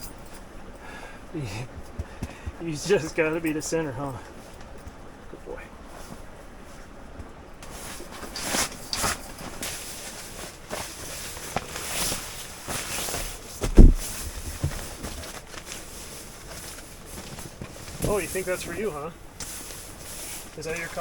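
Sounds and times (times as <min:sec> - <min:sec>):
rustling and shuffling: 0:00.0 - 0:21.0
heavy low thump: 0:13.6 - 0:14.9.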